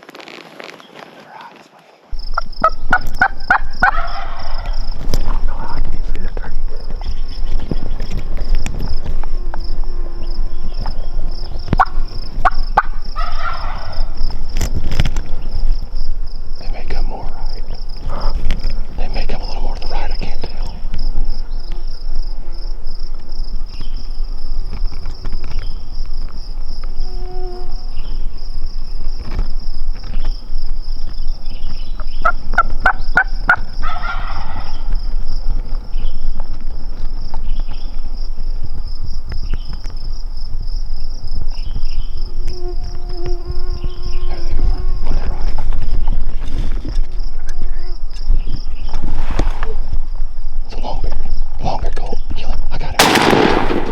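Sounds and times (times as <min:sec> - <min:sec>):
high-pitched insect buzz: 0:02.2 - 0:50.7
turkey gobbling: 0:02.3 - 0:04.9, 0:11.7 - 0:14.2, 0:32.0 - 0:34.9.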